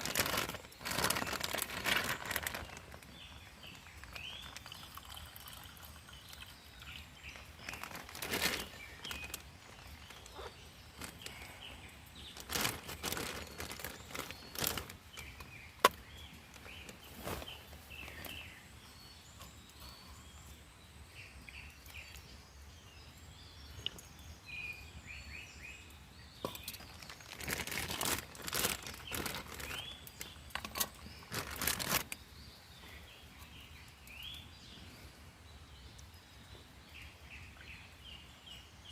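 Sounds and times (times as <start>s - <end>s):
rustling: 0.0s - 3.4s, 7.6s - 11.6s, 12.2s - 18.5s, 26.6s - 29.9s, 30.5s - 32.2s
small birds chirping: 0.0s - 38.9s.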